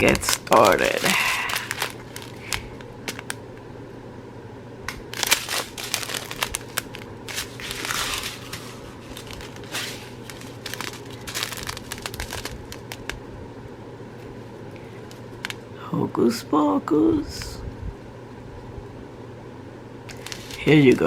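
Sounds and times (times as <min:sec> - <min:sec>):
plastic packaging crinkling: 0:00.0 - 0:03.4, 0:05.0 - 0:13.2, 0:14.2 - 0:15.7, 0:20.1 - 0:21.0.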